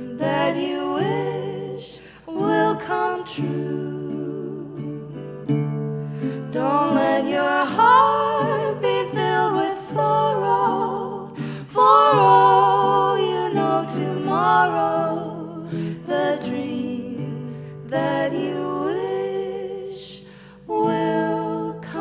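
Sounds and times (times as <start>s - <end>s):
women singing harmonies: 0.0s - 22.0s
strummed acoustic guitar: 4.8s - 19.0s.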